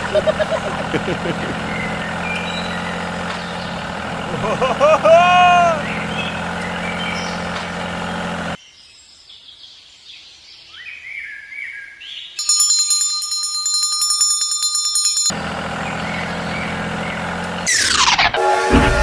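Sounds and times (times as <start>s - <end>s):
vehicle engine running: 0.0s - 8.6s, 15.3s - 19.0s
birds chirping: 0.0s - 10.0s, 15.4s - 18.9s.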